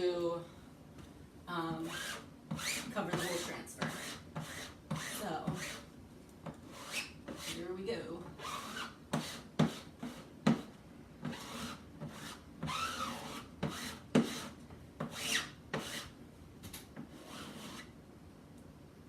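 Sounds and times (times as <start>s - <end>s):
squeegee scraping paste: 1.9s - 5.8s, 17.1s - 17.9s.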